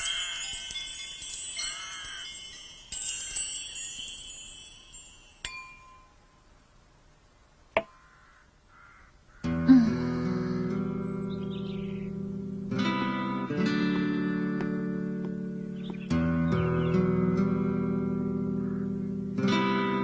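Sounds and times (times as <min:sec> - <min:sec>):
wind chimes tinkling: 0:00.0 - 0:06.8
guitar playing: 0:09.4 - 0:20.0.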